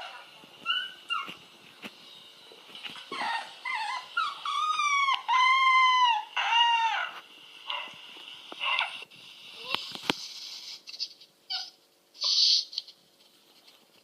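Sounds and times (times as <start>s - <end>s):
puppy whining and howling: 0.0s - 1.4s, 3.0s - 7.2s.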